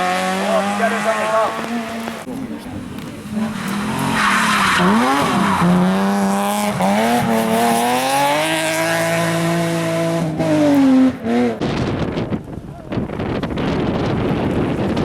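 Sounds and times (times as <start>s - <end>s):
rally car engine revving through gears: 0.0s - 2.3s, 3.2s - 11.8s.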